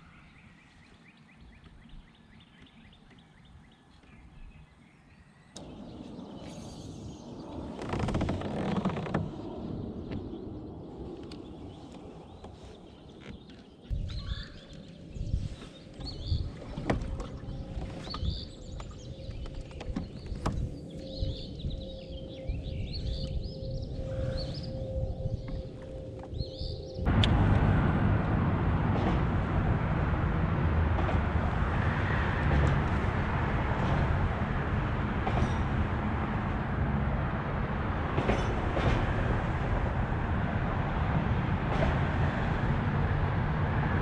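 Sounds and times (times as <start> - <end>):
bird chirps: 11.4 - 16.5
water noise: 14.7 - 22.3, 23.2 - 44.0.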